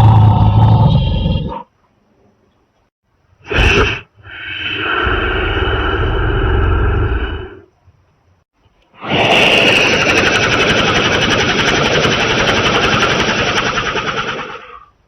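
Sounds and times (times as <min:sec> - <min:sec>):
rattling blast with crackling: 0:09.3 - 0:14.6.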